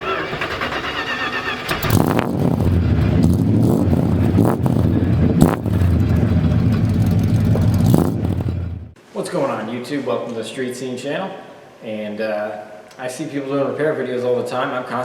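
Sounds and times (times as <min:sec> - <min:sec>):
car engine starting and rumbling: 0:00.0 - 0:09.0.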